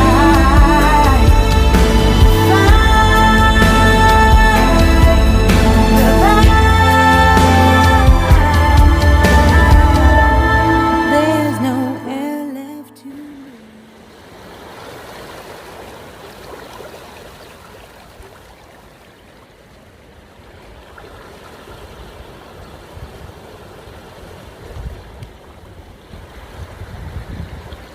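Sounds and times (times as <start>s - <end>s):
low rumbling: 0.0s - 12.2s
waves washing onto shore: 13.8s - 27.9s.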